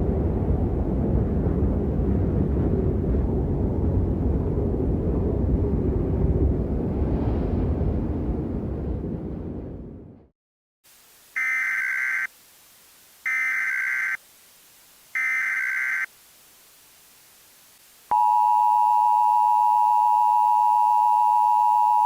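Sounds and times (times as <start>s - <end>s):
deep rumbling noise: 0.0s - 10.3s
faint hiss: 10.8s - 18.1s.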